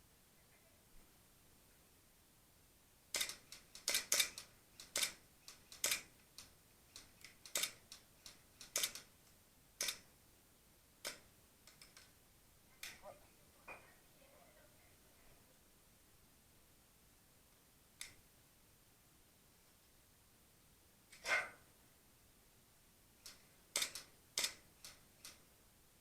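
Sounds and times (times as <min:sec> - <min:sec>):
sharp clicks and snaps: 0:03.1 - 0:10.1, 0:11.0 - 0:12.2, 0:12.8 - 0:13.0, 0:18.0 - 0:18.2, 0:23.2 - 0:25.4.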